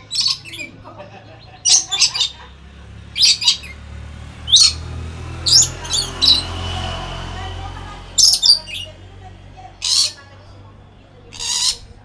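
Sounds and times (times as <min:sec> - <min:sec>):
parrot squawking shrilly: 0:00.0 - 0:00.7, 0:01.7 - 0:02.4, 0:03.2 - 0:03.8, 0:04.5 - 0:06.7, 0:08.2 - 0:09.0, 0:09.8 - 0:10.2, 0:11.3 - 0:11.9.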